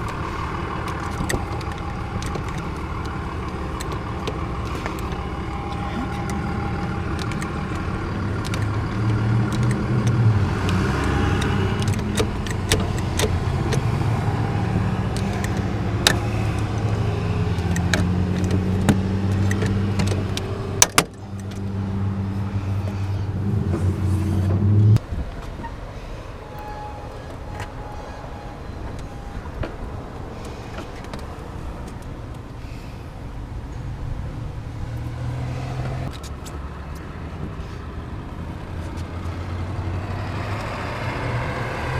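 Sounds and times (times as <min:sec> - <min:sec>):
sharp clicks and rattles: 0:00.0 - 0:14.4, 0:15.0 - 0:21.7
vehicle engine humming: 0:00.0 - 0:41.9.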